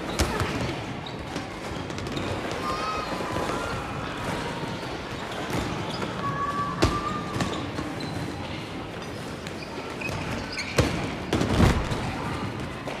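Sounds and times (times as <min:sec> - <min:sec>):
basketballs bouncing: 0:00.0 - 0:02.6, 0:09.4 - 0:13.0
sneakers squeaking: 0:00.0 - 0:13.0.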